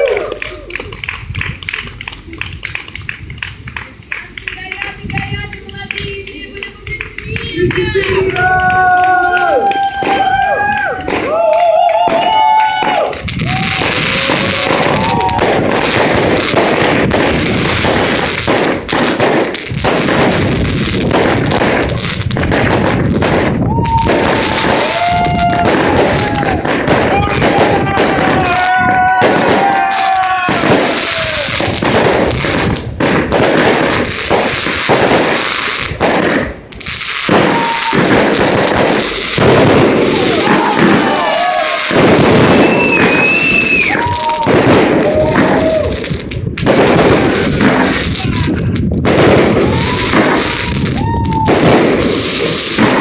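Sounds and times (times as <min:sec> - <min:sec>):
fireworks firing rapid salvos: 0:00.0 - 0:53.0
people calling out: 0:04.6 - 0:15.4, 0:40.1 - 0:42.0.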